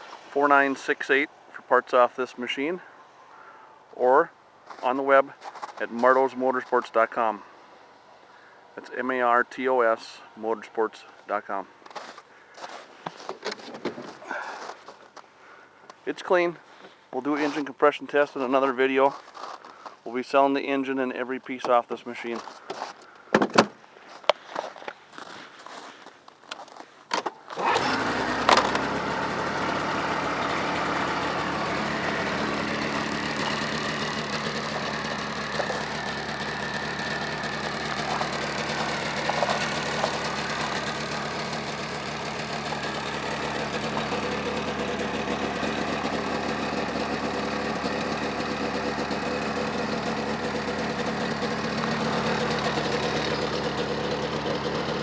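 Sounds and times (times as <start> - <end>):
snowmobile engine idling: 27.6 - 55.0.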